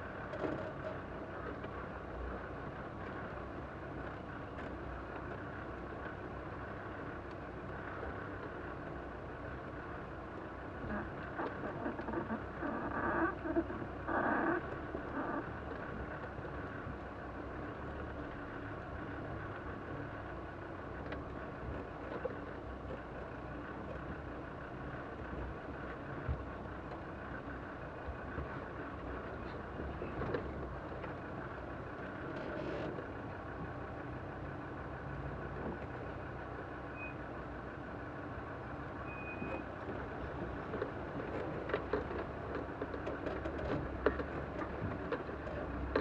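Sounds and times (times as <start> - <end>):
vehicle driving on rough track: 0.0 - 46.0.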